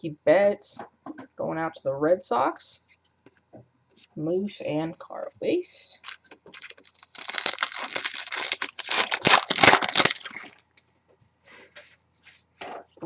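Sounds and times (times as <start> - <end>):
plastic wrapper crinkling and tearing: 6.0 - 10.8.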